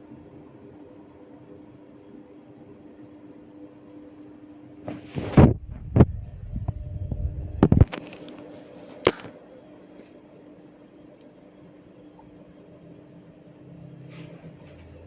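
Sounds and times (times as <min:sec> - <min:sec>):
hair cracking pops: 0:09.0 - 0:09.4.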